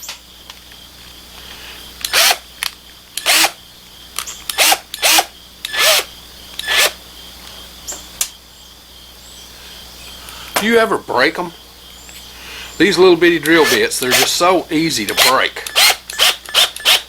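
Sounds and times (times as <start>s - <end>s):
small power drill whirring: 1.9s - 2.5s, 3.2s - 3.6s, 4.2s - 7.0s, 13.4s - 14.4s, 15.2s - 17.0s.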